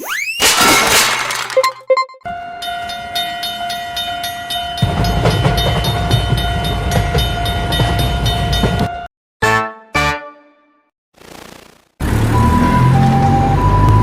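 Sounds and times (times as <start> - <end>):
passing train rumble: 2.3 - 9.1.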